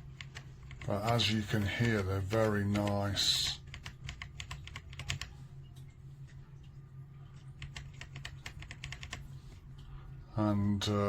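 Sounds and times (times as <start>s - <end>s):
low steady hum: 0.0s - 11.0s
mechanical keyboard typing: 0.2s - 5.4s, 7.6s - 9.2s.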